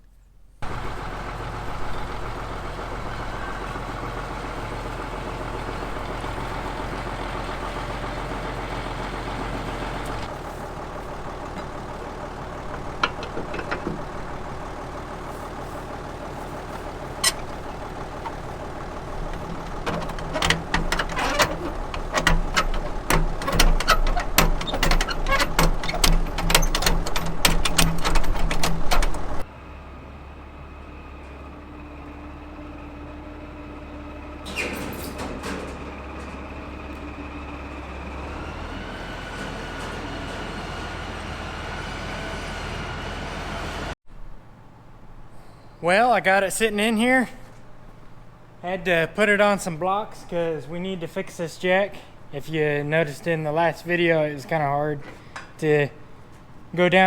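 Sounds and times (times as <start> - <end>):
rapid metallic rattling and clanking: 0.6 - 29.5
tractor diesel engine running: 0.6 - 45.4, 46.5 - 57.0.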